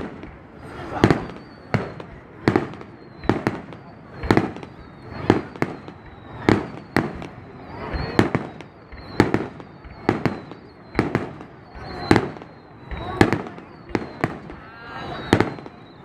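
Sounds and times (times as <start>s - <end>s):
faint high whistle: 0.0s - 16.0s
fireworks bangs: 0.0s - 16.0s.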